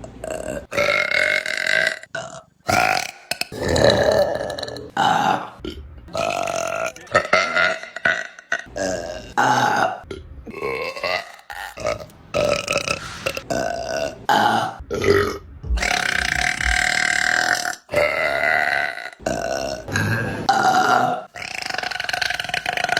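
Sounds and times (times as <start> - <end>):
women burping: 2.7 - 12.6.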